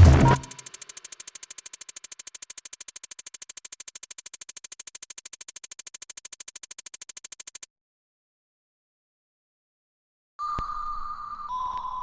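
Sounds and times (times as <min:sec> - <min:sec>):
fast synth pulse: 0:00.0 - 0:07.7.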